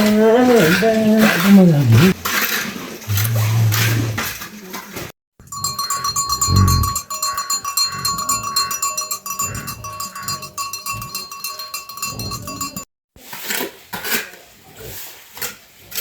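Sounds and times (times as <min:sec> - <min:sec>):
low animal calls: 0:03.1 - 0:04.4, 0:05.9 - 0:10.6
animal bells jingling: 0:05.4 - 0:12.9.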